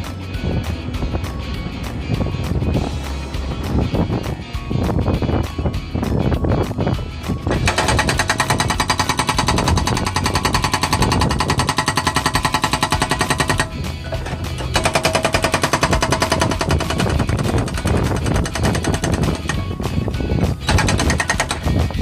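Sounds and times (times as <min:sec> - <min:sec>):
excavator engine running: 0:07.1 - 0:22.0
hydraulic breaker hammering concrete: 0:07.5 - 0:22.0.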